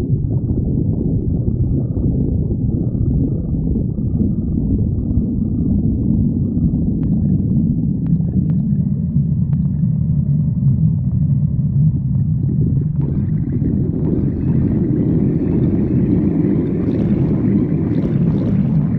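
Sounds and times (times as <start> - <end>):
stomach growling: 0.0 - 18.9
hissy gurgling: 12.7 - 18.9.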